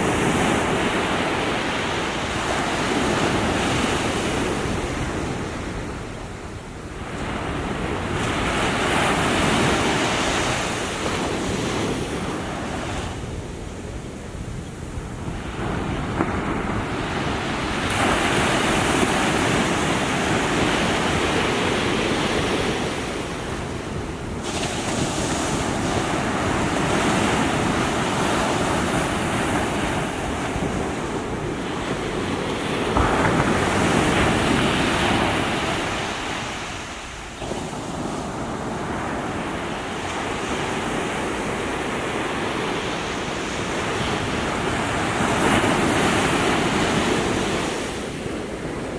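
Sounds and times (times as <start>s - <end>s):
small waves breaking on shore: 0.0s - 48.9s.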